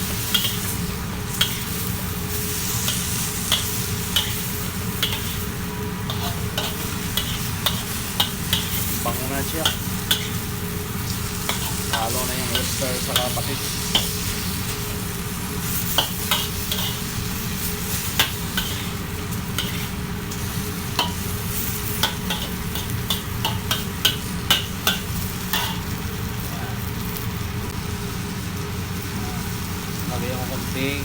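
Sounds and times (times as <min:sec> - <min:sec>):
chicken sizzling in a pan: 0:00.0 - 0:31.0
utensil scraping a pan: 0:06.1 - 0:10.4, 0:15.7 - 0:17.1, 0:17.7 - 0:25.9.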